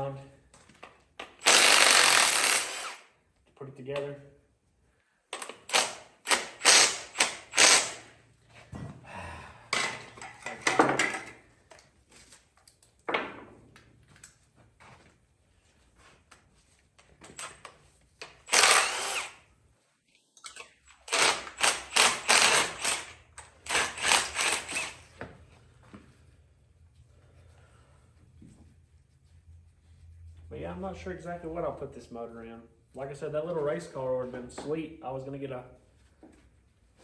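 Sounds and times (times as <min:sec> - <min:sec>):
impact wrench bursts: 0:01.3 - 0:03.1, 0:05.4 - 0:08.2, 0:17.3 - 0:19.4, 0:20.5 - 0:25.2.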